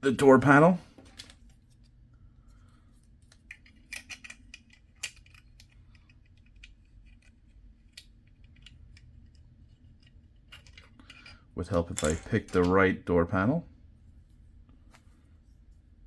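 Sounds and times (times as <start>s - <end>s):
plastic parts clicking: 3.2s - 9.4s, 10.0s - 12.8s.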